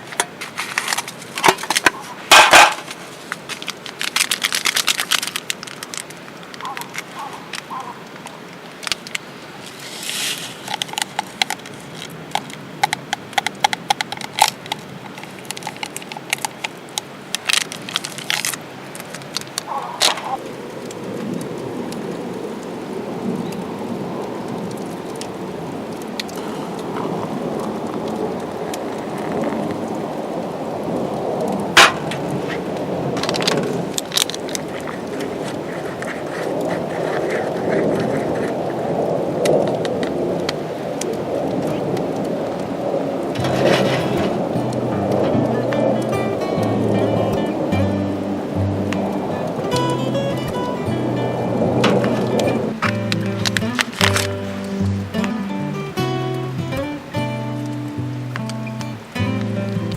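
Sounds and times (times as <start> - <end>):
loud crack: 0.0 - 21.5, 30.9 - 35.2, 41.0 - 47.6, 48.9 - 55.4
wood fire crackling: 0.0 - 59.9
low rushing noise: 42.8 - 56.1.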